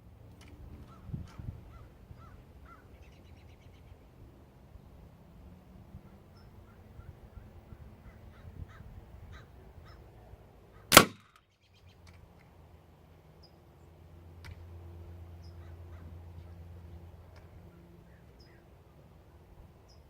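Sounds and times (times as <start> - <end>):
air gun shot: 10.9 - 11.4.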